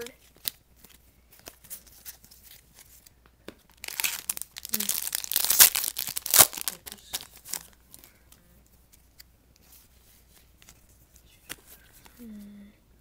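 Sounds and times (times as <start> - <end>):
foil wrapper crinkling: 3.7 - 8.1.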